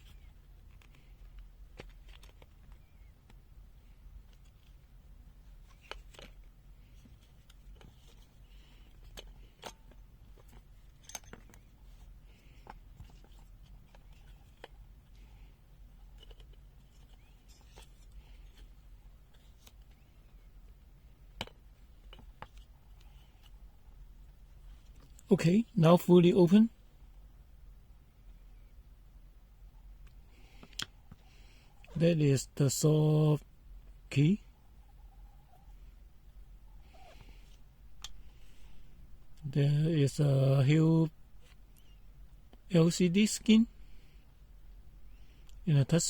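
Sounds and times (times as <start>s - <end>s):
low steady hum: 0.0s - 46.0s.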